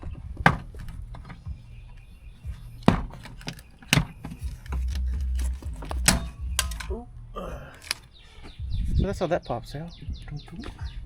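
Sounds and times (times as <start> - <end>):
low background music: 0.0 - 11.0
plastic clips popping loose: 2.8 - 6.9.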